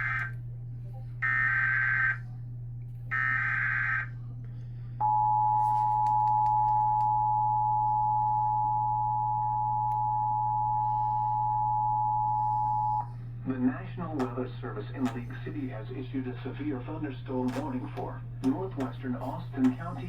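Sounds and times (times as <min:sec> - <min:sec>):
low steady hum: 0:00.0 - 0:20.0
buzzy data bursts: 0:03.1 - 0:04.1.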